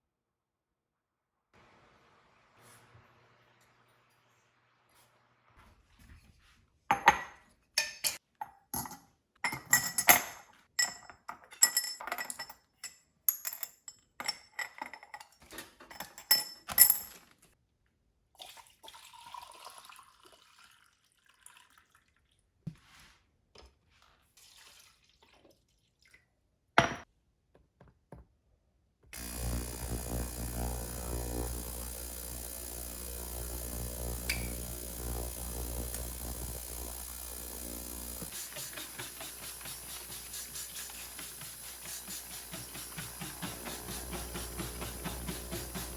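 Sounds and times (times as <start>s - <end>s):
electric motor humming: 29.2s - 45.9s.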